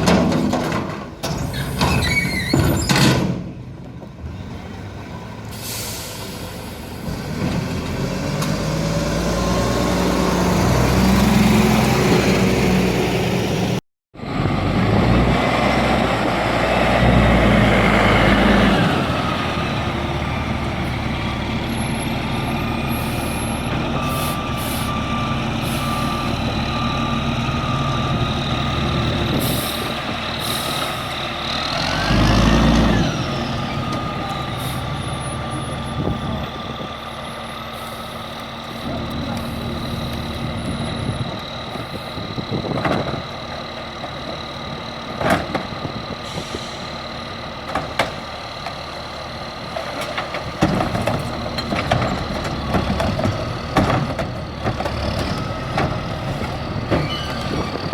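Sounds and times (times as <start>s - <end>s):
garbage truck engine revving: 6.9s - 57.9s
back-up alarm beeping: 22.9s - 28.6s.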